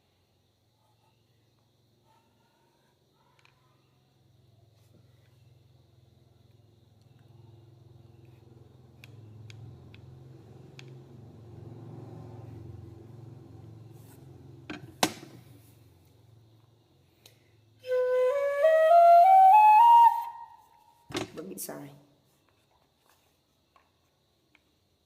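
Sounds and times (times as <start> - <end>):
faint low hum: 0.0 - 18.5
bamboo flute run of notes: 17.8 - 20.9.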